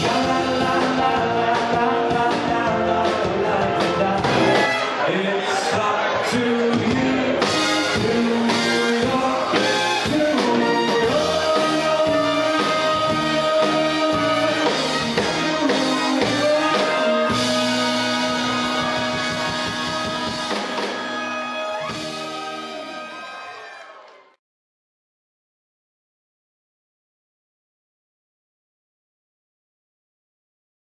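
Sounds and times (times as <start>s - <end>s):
steady drum beat: 0.0s - 4.8s, 6.6s - 22.7s
swing band playing: 0.0s - 23.3s.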